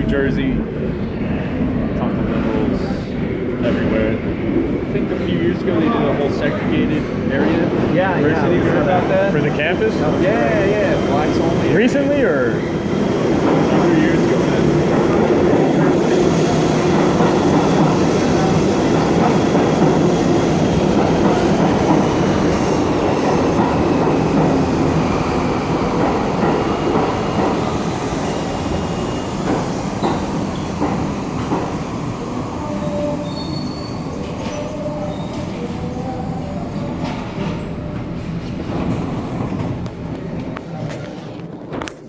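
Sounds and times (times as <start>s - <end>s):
subway train rumble and clatter: 0.0s - 42.0s.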